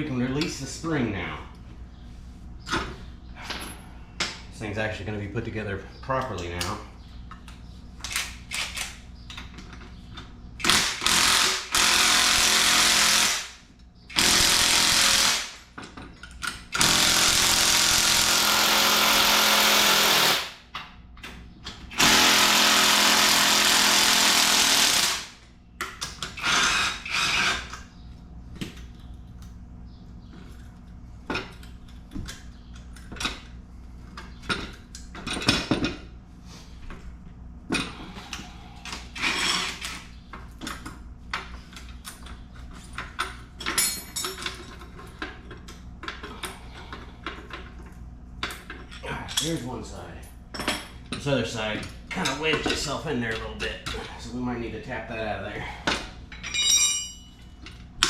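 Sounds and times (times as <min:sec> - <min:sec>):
impact wrench running: 0:10.6 - 0:15.7, 0:16.8 - 0:20.6, 0:21.9 - 0:25.4, 0:26.4 - 0:27.7.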